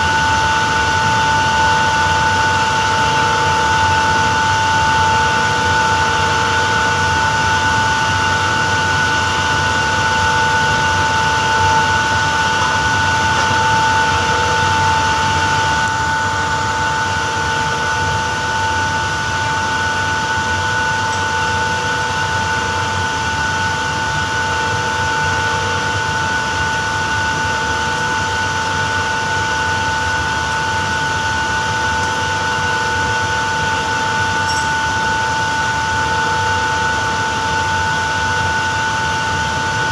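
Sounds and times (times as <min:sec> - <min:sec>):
screw compressor running: 0:02.1 - 0:18.6.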